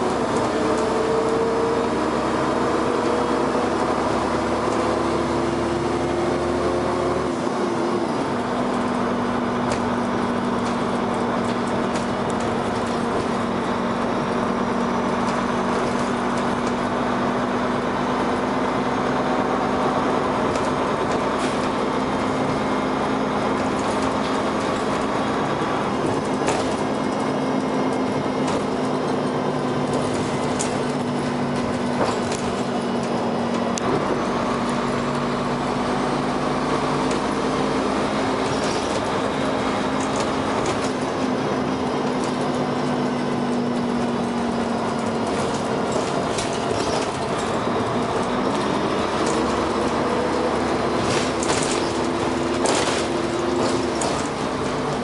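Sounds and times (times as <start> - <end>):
bus engine drone: 0.0 - 55.0
bodywork knocks and rattles: 20.3 - 33.8, 41.9 - 55.0.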